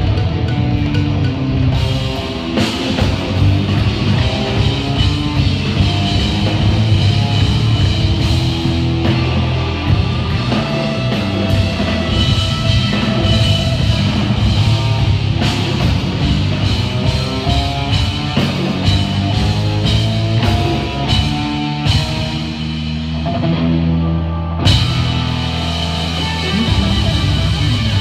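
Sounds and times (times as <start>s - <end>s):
loud rock music with drums: 0.0s - 28.0s.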